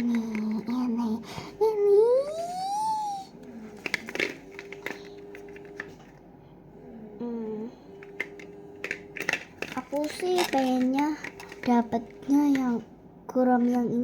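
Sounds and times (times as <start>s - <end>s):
child's voice: 0.0s - 3.4s, 9.8s - 14.0s
faint steady hum: 0.0s - 14.0s.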